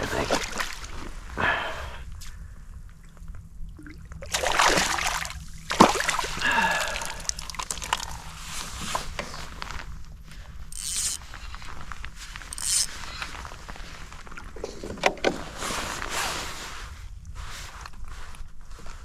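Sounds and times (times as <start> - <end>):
water sloshing: 0.0 - 1.4, 2.9 - 16.1.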